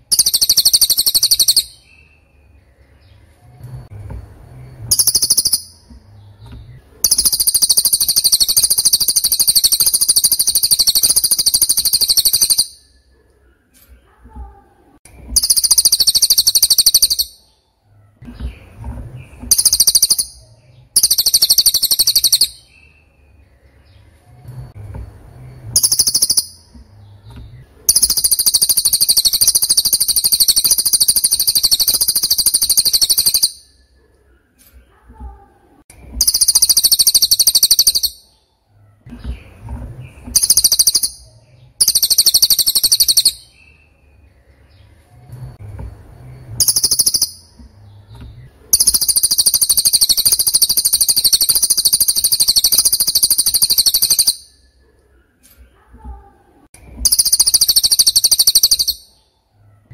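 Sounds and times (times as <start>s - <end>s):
bird trilling: 0.0s - 2.2s, 4.7s - 5.9s, 7.0s - 13.0s, 15.3s - 17.5s, 19.4s - 23.1s, 25.6s - 26.8s, 27.8s - 33.9s, 36.2s - 38.4s, 40.2s - 44.1s, 46.6s - 47.6s, 48.7s - 54.7s, 57.0s - 59.2s.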